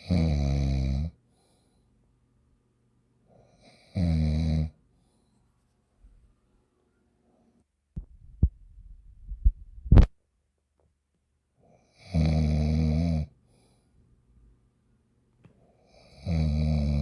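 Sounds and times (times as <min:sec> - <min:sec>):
loud snore: 0:00.0 - 0:01.1, 0:12.0 - 0:13.3, 0:16.0 - 0:17.0.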